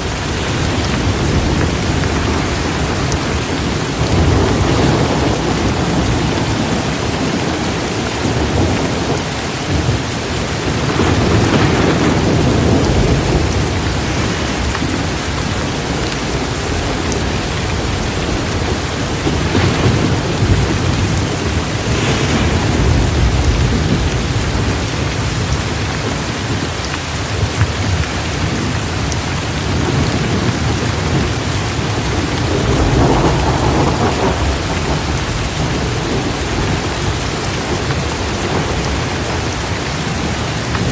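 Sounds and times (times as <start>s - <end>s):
heavy rain pouring: 0.0s - 40.9s
rolling thunder: 0.0s - 40.9s.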